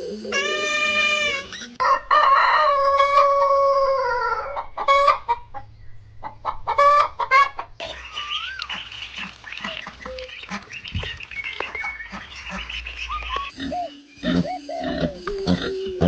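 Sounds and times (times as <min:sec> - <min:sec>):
chicken clucking: 0:01.5 - 0:16.0
rooster crowing: 0:01.8 - 0:05.1
ducklings calling: 0:06.4 - 0:16.0.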